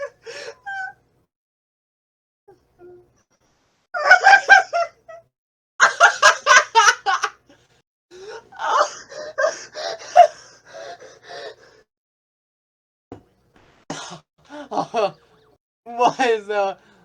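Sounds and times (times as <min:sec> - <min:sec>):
person laughing: 0:05.8 - 0:07.3, 0:14.0 - 0:15.2.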